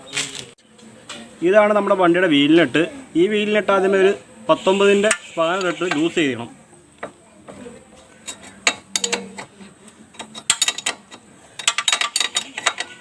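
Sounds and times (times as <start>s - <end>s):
spanner metallic clicks and clinks: 8.2s - 9.5s, 10.1s - 13.0s.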